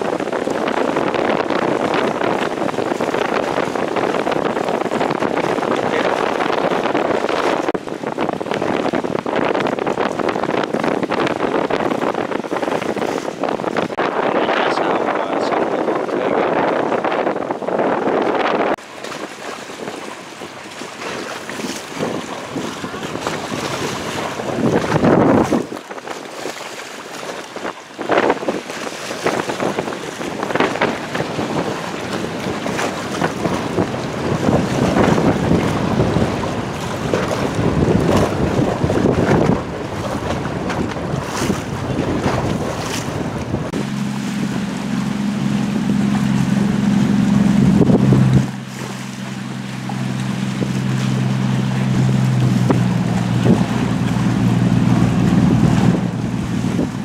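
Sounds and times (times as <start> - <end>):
water splashing against boat: 0.0 - 57.0
wind buffeting microphone: 0.0 - 57.0
low engine hum: 29.4 - 57.0.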